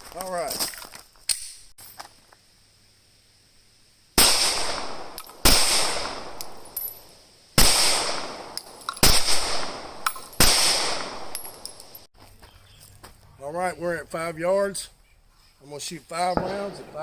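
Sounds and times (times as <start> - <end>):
pistol shots with echo: 4.2 - 6.6, 7.6 - 11.6, 16.4 - 17.0.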